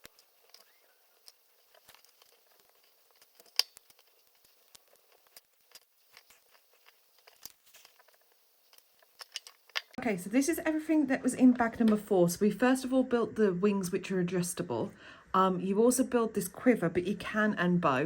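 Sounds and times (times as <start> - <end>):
light rustling of bricks: 0.0 - 10.0
plastic bricks clicking together: 8.7 - 10.0.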